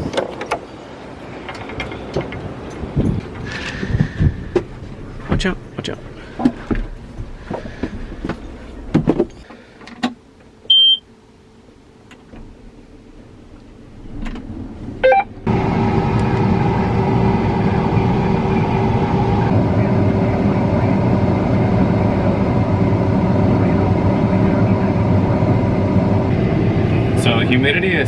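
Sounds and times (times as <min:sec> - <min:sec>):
combine harvester engine and machinery: 0:00.0 - 0:28.0
short beep: 0:10.7 - 0:11.0, 0:15.0 - 0:15.3.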